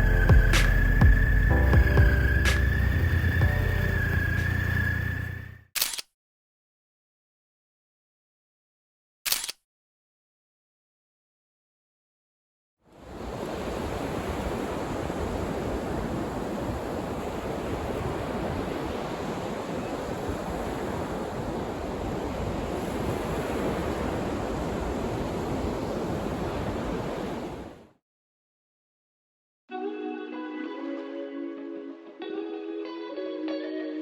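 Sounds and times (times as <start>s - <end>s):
surf breaking on a beach: 13.0s - 27.9s
wind on microphone: 13.1s - 27.8s.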